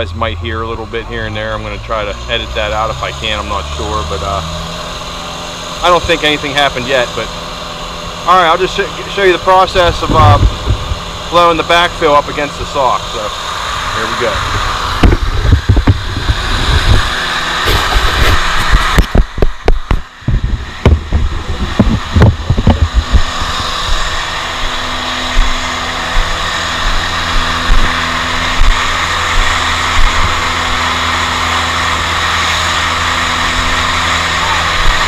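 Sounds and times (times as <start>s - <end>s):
blower droning: 0.0s - 35.0s
low knocks and thumps: 10.0s - 11.0s, 15.0s - 17.1s, 17.7s - 24.1s.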